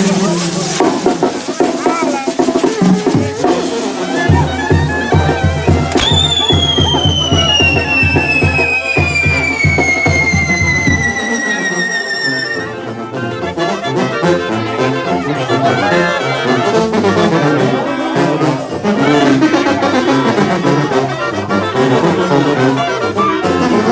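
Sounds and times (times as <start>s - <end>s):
brass band playing: 0.0s - 23.9s
high whistle sliding downward: 5.9s - 13.0s.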